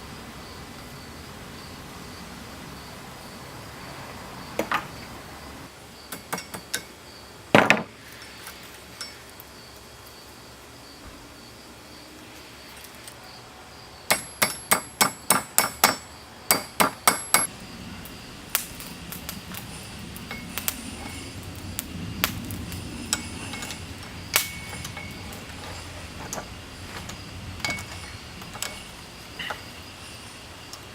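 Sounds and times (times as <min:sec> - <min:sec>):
hammer striking steel on anvil: 0:14.1 - 0:17.5, 0:23.1 - 0:25.7, 0:27.0 - 0:28.9.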